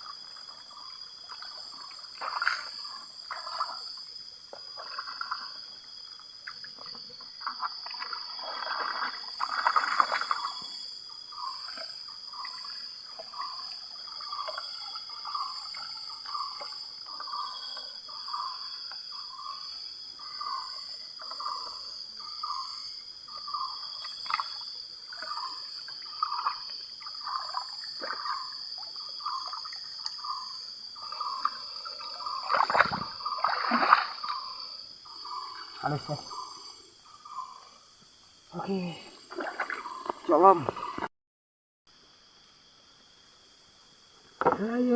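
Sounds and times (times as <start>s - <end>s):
water sloshing: 0.0s - 5.8s, 6.4s - 10.7s, 23.7s - 36.3s, 39.1s - 41.0s
insects droning: 0.0s - 41.1s, 41.9s - 44.9s.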